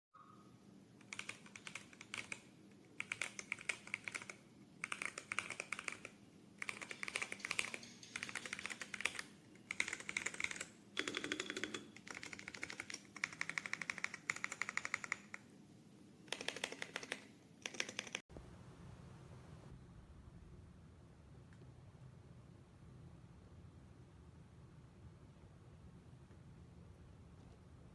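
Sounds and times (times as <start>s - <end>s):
typing on a mechanical keyboard: 1.0s - 15.4s, 16.3s - 18.2s.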